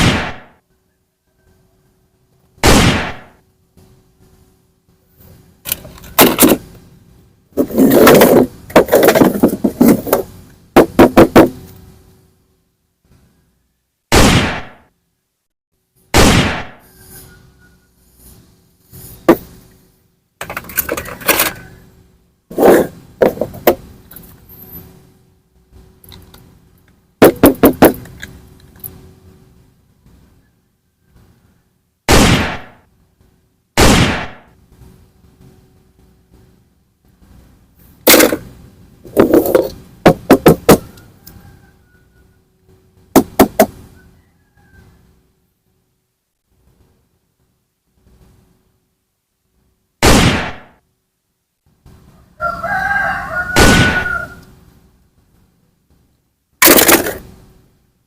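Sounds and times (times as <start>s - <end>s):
rapid clattering: 7.6s - 11.6s, 56.6s - 57.3s
toy gun thumps: 38.1s - 38.4s, 56.6s - 57.2s.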